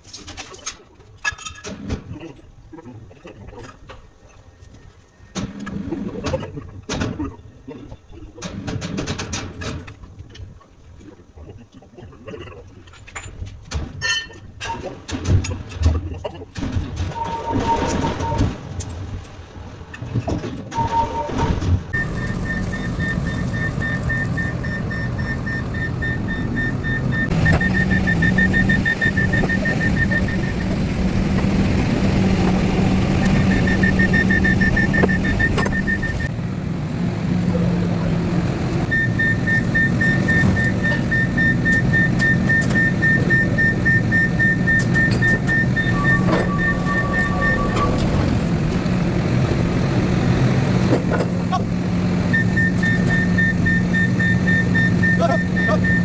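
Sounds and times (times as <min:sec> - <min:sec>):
engine humming: 0:22.0 - 0:56.0.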